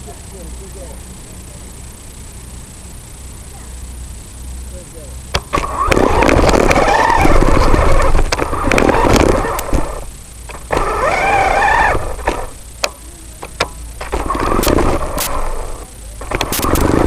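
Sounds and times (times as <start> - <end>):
electric motor whining: 5.3 - 17.0
sharp clicks: 5.3 - 17.0.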